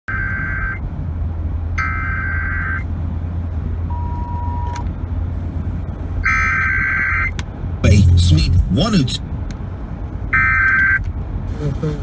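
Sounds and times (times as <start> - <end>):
constant low hum: 7.8 - 9.6.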